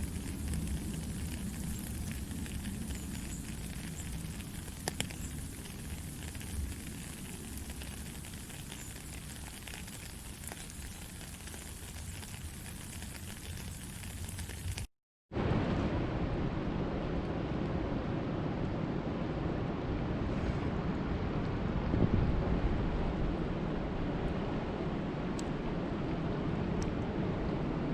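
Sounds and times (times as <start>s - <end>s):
steady rain falling: 0.0s - 14.9s
low rumble: 15.4s - 27.9s.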